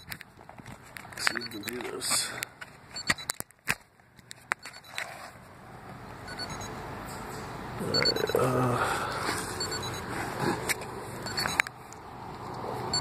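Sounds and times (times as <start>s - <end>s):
faint short high beeps: 7.8s - 8.5s.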